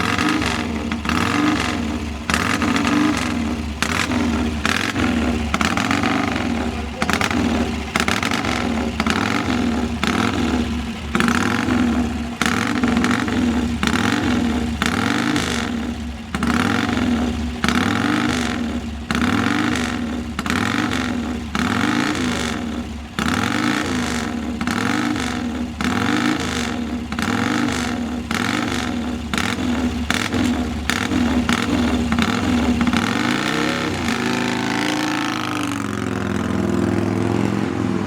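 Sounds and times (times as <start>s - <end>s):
motorcycle engine revving: 0.0s - 38.0s.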